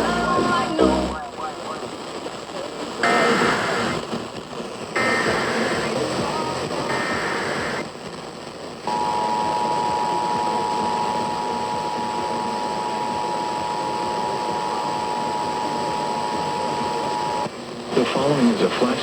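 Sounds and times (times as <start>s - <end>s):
two-tone attention signal: 0.0s - 1.2s
data burst tones: 0.0s - 1.3s, 3.0s - 4.3s, 5.0s - 7.9s, 8.9s - 17.5s
radio hiss: 0.0s - 19.0s.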